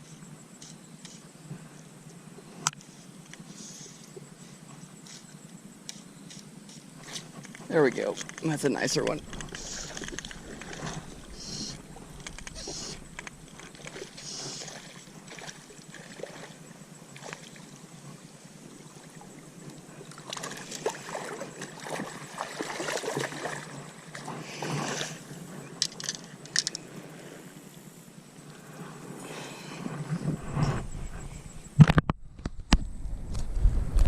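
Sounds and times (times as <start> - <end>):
water sloshing and splashing: 7.0 - 27.3
sharp clicks: 7.4 - 14.5.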